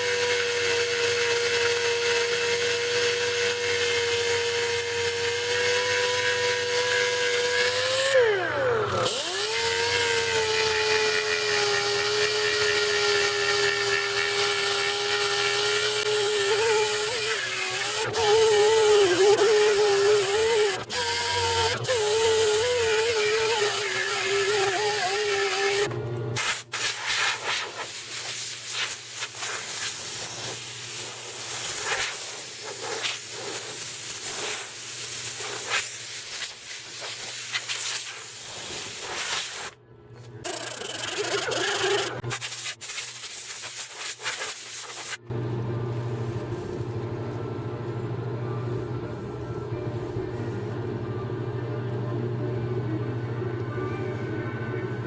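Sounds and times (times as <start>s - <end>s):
electric power sander whining: 0.0s - 26.0s.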